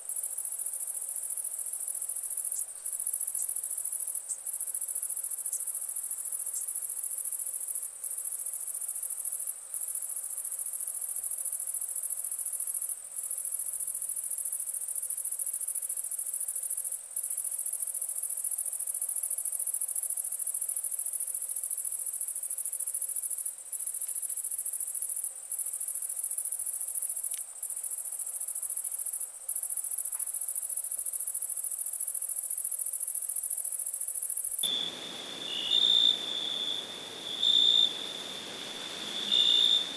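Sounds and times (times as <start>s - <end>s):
crickets chirping: 23.4s - 39.9s.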